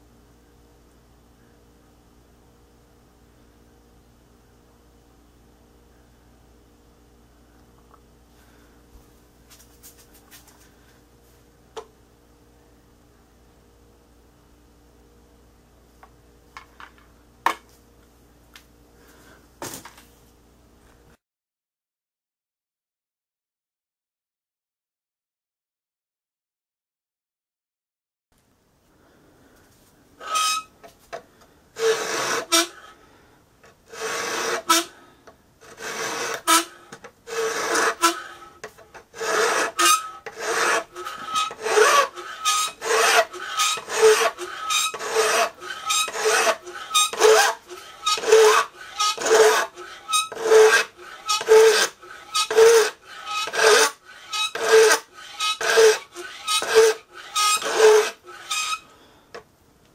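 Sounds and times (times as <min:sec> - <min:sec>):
file rasping on steel: 0:30.2 - 0:30.7, 0:31.8 - 0:32.9, 0:33.9 - 0:35.0, 0:35.6 - 0:58.8.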